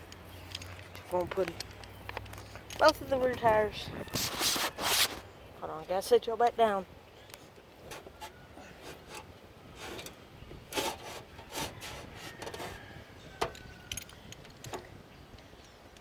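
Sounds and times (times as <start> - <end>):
metal tools clinking and knocking: 0.1 - 3.5, 13.4 - 14.9.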